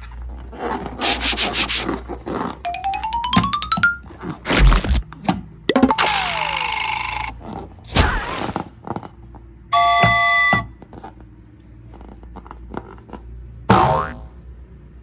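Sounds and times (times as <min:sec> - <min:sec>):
thud: 0:07.9 - 0:08.7.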